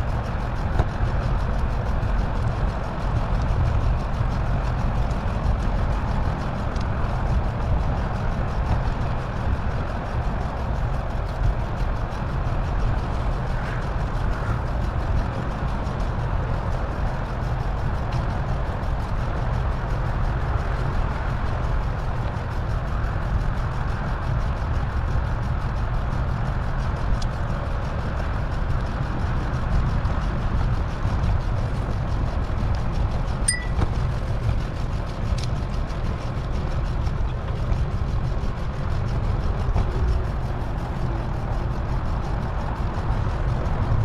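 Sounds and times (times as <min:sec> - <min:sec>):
bicycle road noise: 0:00.0 - 0:44.0
rushing wind: 0:00.0 - 0:44.0
short high beep: 0:33.5 - 0:33.8.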